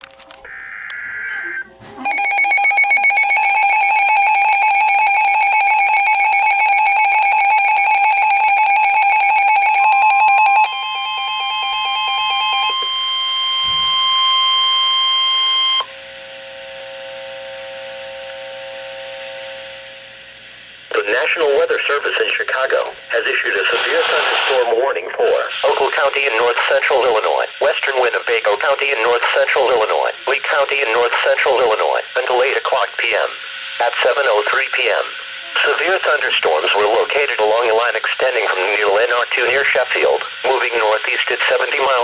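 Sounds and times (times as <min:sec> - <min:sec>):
fast-pulsing electronic alarm: 0:00.5 - 0:15.8.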